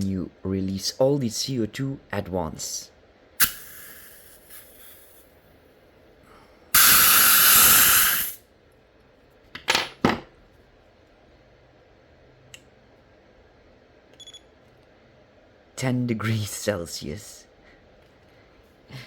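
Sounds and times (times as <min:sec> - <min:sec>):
gas hissing from pistol: 0:03.4 - 0:05.2, 0:06.8 - 0:08.4
short gas spurts: 0:06.8 - 0:08.4.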